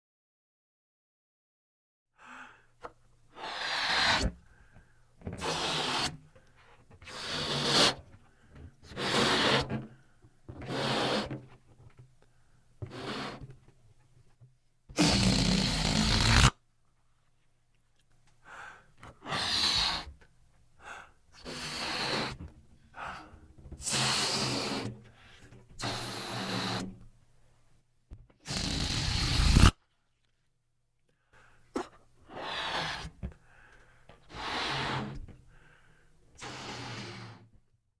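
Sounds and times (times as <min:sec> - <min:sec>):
breathy puffs into balloon: 0:03.3 - 0:06.4, 0:07.0 - 0:10.0, 0:14.9 - 0:16.5, 0:18.5 - 0:20.2, 0:20.8 - 0:27.0, 0:28.4 - 0:29.7, 0:31.4 - 0:37.5
rush of air from balloon: 0:03.4 - 0:04.4, 0:05.4 - 0:06.1, 0:15.0 - 0:16.5, 0:23.8 - 0:25.0, 0:25.8 - 0:26.9, 0:28.4 - 0:29.7, 0:32.3 - 0:33.2, 0:34.3 - 0:35.2, 0:36.4 - 0:37.4
rubbery balloon squeak: 0:05.3 - 0:06.2, 0:07.0 - 0:08.0, 0:08.9 - 0:09.8, 0:10.6 - 0:11.4, 0:14.9 - 0:16.5, 0:25.8 - 0:27.0, 0:28.4 - 0:29.8.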